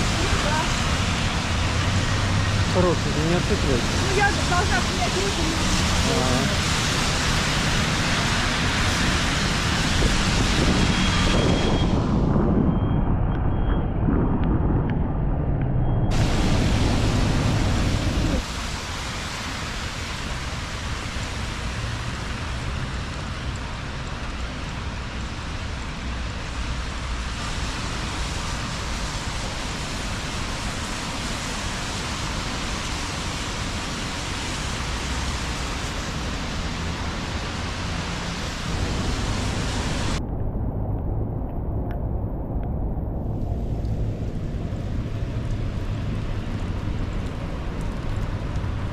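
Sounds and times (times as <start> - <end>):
rain on wet street: 0.0 - 12.2, 16.1 - 48.9
low rumble: 8.2 - 20.0, 38.4 - 48.9.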